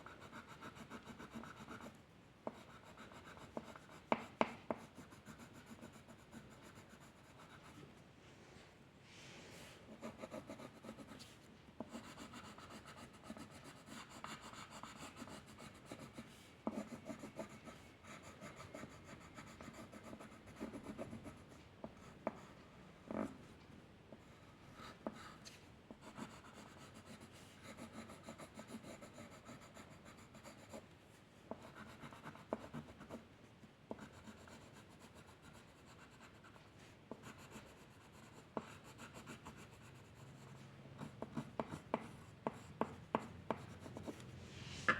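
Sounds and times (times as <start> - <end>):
drawing tool scratching on paper: 0.0 - 7.8, 9.9 - 21.5, 26.0 - 30.8, 31.5 - 33.2, 33.9 - 40.3, 41.0 - 44.2.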